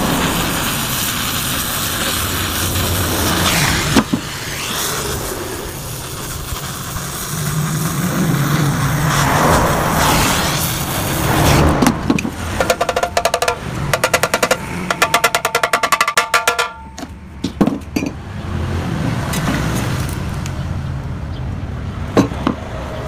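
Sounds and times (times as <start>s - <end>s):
hammer tapping metal muffler: 11.8s - 18.2s.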